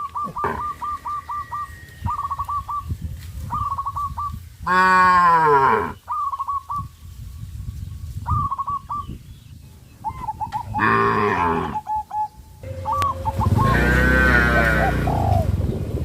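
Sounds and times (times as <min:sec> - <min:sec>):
birds chirping: 0:00.0 - 0:16.0
cow mooing: 0:00.4 - 0:00.8, 0:10.8 - 0:11.8, 0:12.6 - 0:15.5.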